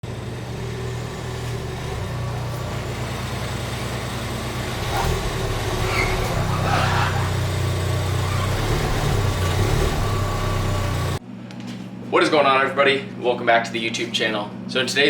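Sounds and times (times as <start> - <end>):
car engine running: 0.0 - 11.2.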